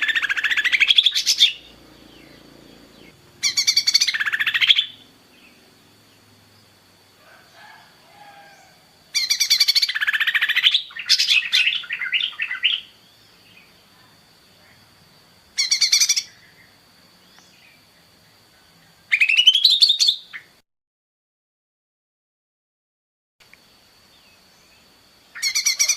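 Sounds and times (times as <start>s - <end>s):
bird calling in trilled bursts: 0.0s - 5.8s, 8.4s - 13.0s, 15.5s - 16.6s, 19.1s - 20.6s, 25.3s - 25.9s.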